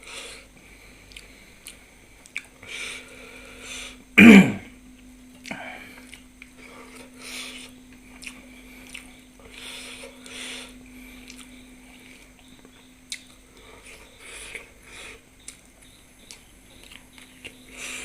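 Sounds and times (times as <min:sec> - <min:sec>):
low electrical hum: 0:00.0 - 0:18.0
chewing and mouth clicks: 0:01.0 - 0:02.6, 0:05.0 - 0:09.6, 0:11.2 - 0:14.7, 0:15.4 - 0:18.0
short hissing breaths: 0:09.4 - 0:11.3.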